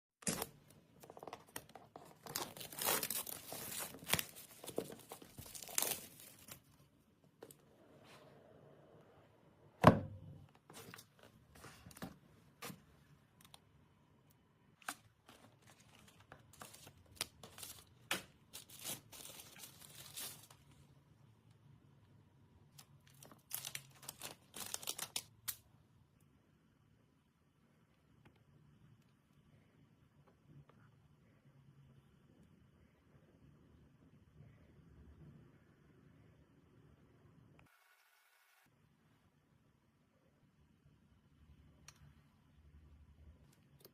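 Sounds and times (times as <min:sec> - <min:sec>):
plastic wrap tearing and crinkling: 0:01.2 - 0:06.8, 0:15.6 - 0:20.6, 0:23.0 - 0:25.6.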